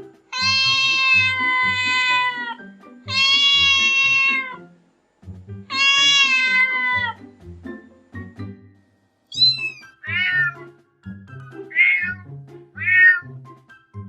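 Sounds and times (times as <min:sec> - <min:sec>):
background music: 0:00.0 - 0:14.0
kitten meowing: 0:00.4 - 0:04.6, 0:05.7 - 0:07.2, 0:09.3 - 0:10.6, 0:11.7 - 0:12.2, 0:12.8 - 0:13.2.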